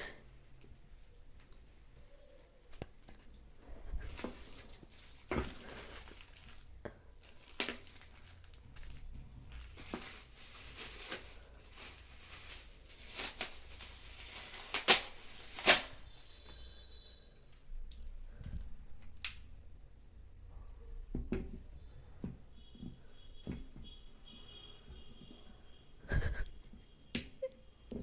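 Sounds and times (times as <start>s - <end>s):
packaging crinkling and tearing: 4.0s - 16.7s.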